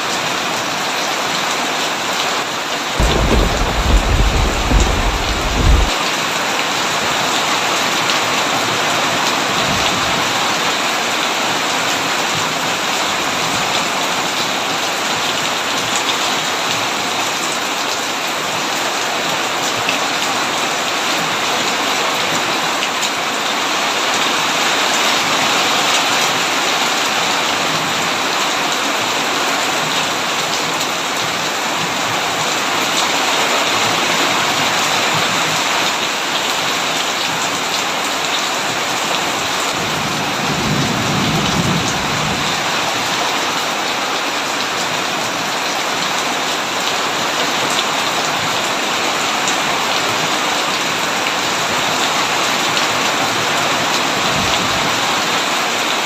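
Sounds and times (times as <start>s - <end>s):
heavy rain on a tin roof: 0.0s - 56.0s
low roll of thunder: 3.0s - 6.0s.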